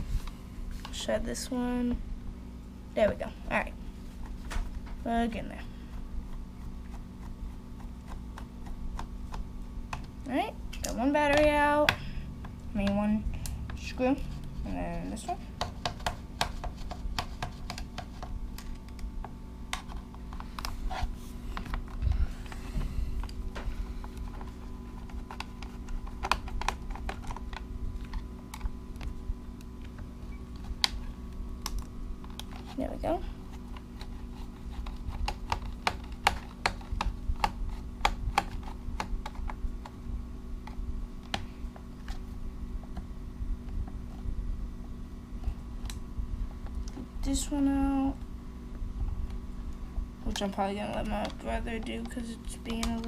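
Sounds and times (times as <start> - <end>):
faint steady hum: 0.0 - 53.0
screwdriver clicking on plastic: 50.3 - 53.0.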